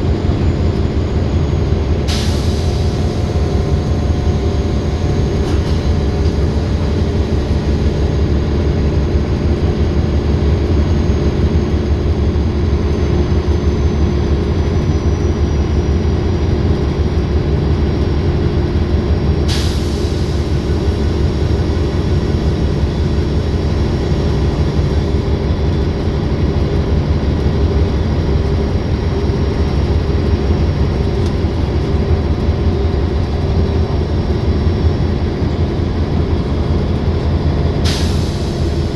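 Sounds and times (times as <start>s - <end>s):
bus diesel engine with turbo whine: 0.0s - 38.9s.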